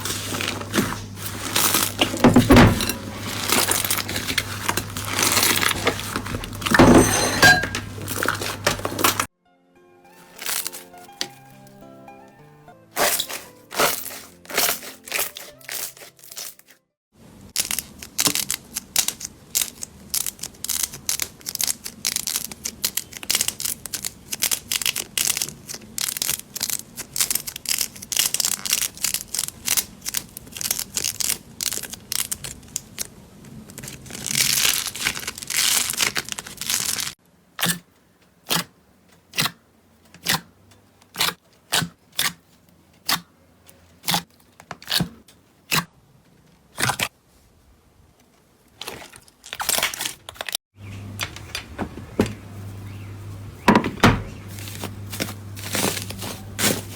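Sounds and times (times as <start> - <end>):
slime crackling: 17.6 - 37.2.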